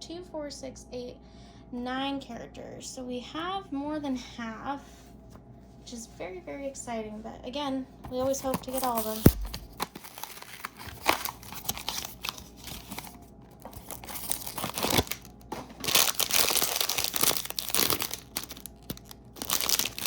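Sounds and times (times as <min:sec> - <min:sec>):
packaging crinkling and tearing: 0:08.2 - 0:20.0.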